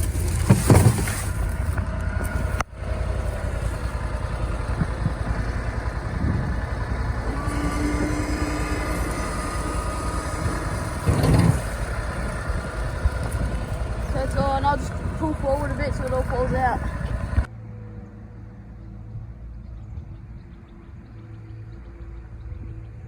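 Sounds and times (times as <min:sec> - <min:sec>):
utility vehicle engine idling: 0:00.0 - 0:17.5.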